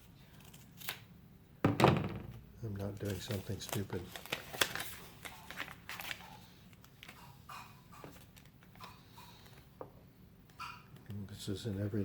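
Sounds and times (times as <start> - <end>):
paper crinkling and rustling: 2.7 - 7.2.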